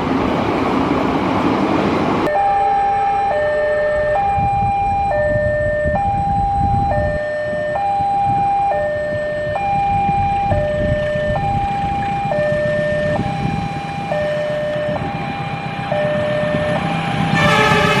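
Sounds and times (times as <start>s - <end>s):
two-tone siren: 2.3s - 18.0s
loud rushing noise: 16.6s - 18.0s.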